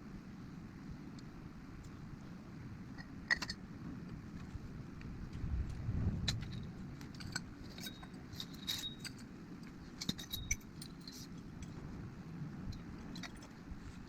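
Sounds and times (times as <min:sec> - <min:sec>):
metal tools clinking: 0:07.2 - 0:09.2, 0:10.0 - 0:11.8.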